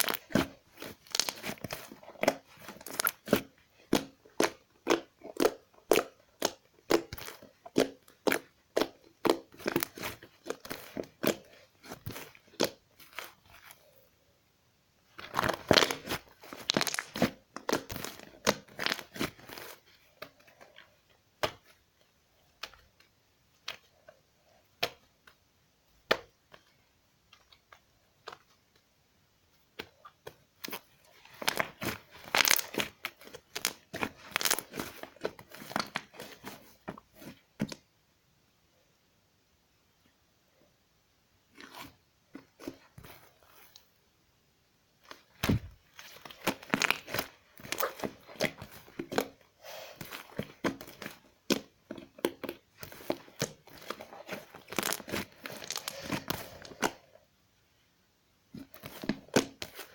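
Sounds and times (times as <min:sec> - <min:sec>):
slime crackling and popping: 0:00.0 - 0:13.3, 0:15.2 - 0:20.3, 0:30.6 - 0:36.6, 0:45.2 - 0:49.4, 0:50.0 - 0:57.0.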